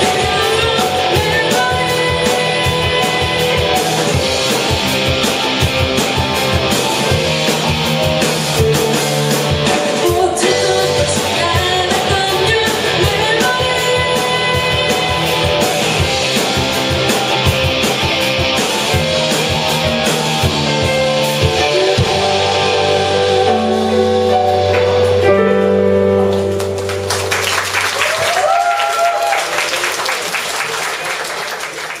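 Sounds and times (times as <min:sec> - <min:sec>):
live rock band playing: 0:00.0 - 0:30.1
audience applause and cheer: 0:26.3 - 0:32.0.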